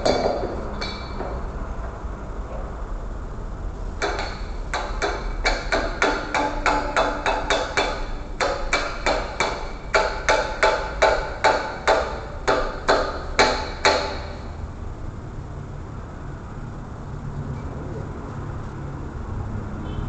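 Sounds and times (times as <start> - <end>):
hammer striking metal: 0.0 - 1.5, 4.0 - 14.5.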